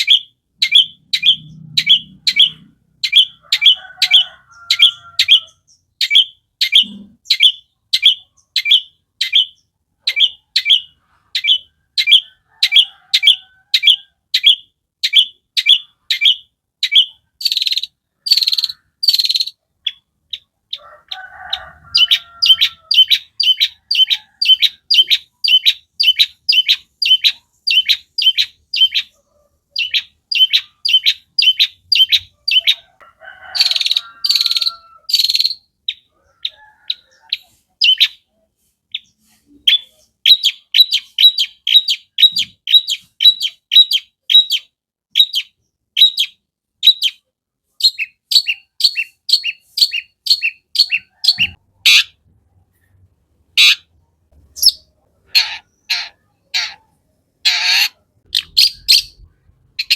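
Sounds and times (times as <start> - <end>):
harsh bird notes: 0.0 - 3.8, 57.5 - 59.9
bird singing sharp repeated notes: 0.0 - 20.8, 22.0 - 32.8, 37.0 - 38.4, 39.0 - 52.2, 53.6 - 59.9.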